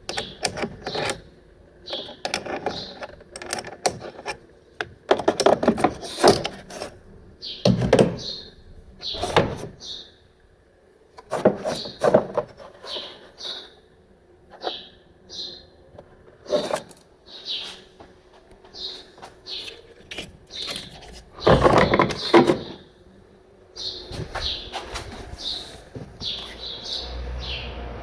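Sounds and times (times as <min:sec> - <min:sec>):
hard objects clattering: 0:19.2 - 0:22.9.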